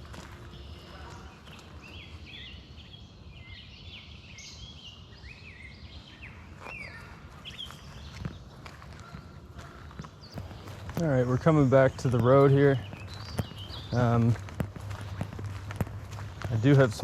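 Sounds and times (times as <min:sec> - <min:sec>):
footsteps: 0:00.0 - 0:02.2, 0:06.6 - 0:17.0
songbirds chirping: 0:00.0 - 0:17.0
steady low rumble: 0:10.4 - 0:17.0.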